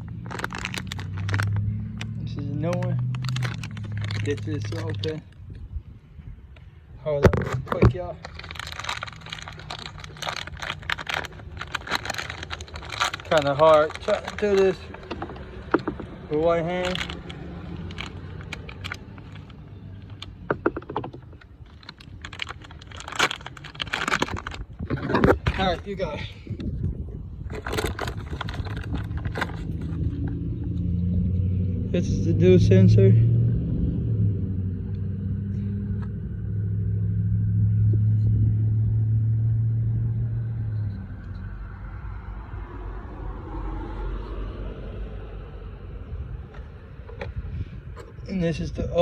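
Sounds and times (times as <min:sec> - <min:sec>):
packaging crinkling and clicking: 0:00.0 - 0:05.2, 0:07.3 - 0:25.8, 0:27.5 - 0:30.2.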